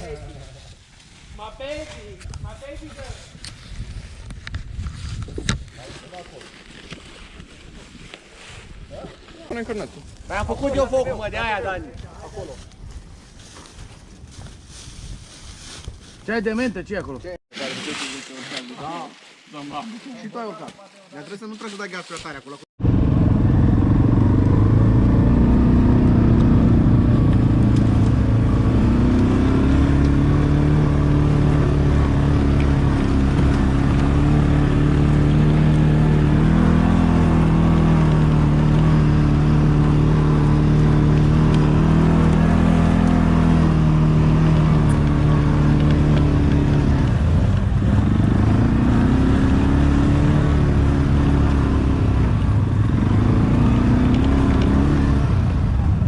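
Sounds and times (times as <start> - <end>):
atv engine running: 22.8 - 56.0.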